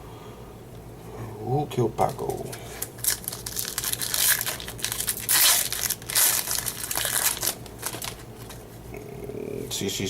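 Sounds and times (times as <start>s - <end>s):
plastic wrapper crinkling: 2.1s - 8.6s.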